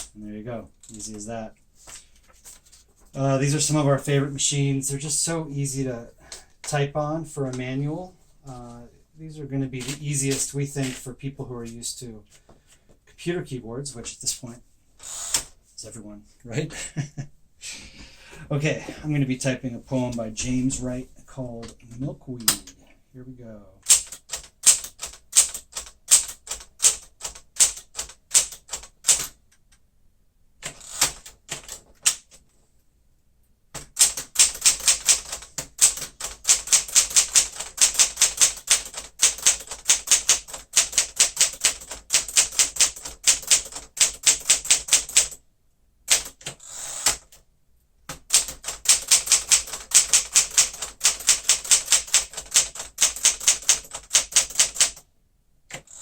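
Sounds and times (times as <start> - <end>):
manual typewriter typing: 9.8 - 11.1, 23.8 - 29.4, 30.6 - 32.4, 33.8 - 45.4, 46.1 - 47.4, 48.1 - 55.0, 55.7 - 56.0.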